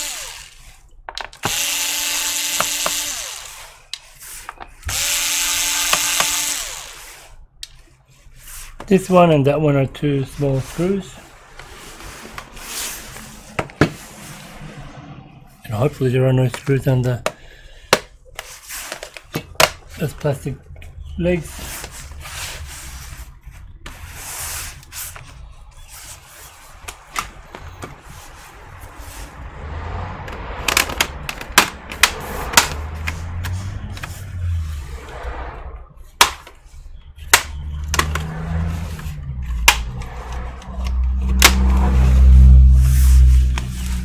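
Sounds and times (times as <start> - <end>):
plastic scraping: 3.8 - 6.5, 16.5 - 20.2, 30.3 - 35.2
plastic clips snapping: 37.3 - 38.4.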